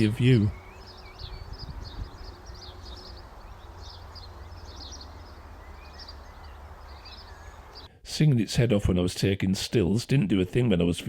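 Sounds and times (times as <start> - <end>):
small birds chirping: 0.0 - 7.9.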